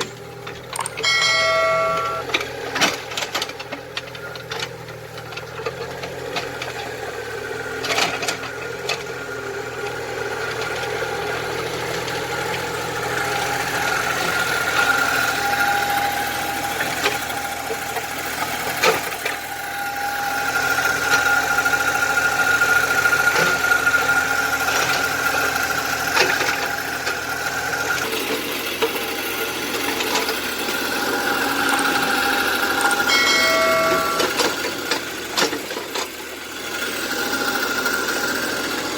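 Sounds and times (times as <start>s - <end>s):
small excavator running: 0.0s - 38.9s
clicks and knocks: 0.5s - 3.0s.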